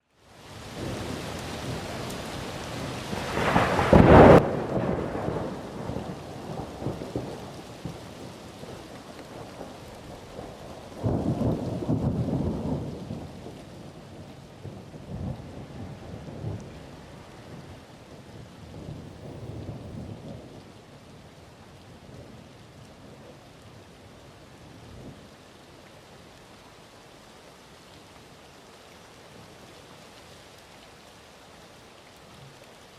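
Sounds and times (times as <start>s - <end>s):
heavy rain: 0.0s - 32.9s
rumble of thunder: 2.8s - 8.8s, 9.4s - 20.7s
thunderclap: 3.2s - 7.3s.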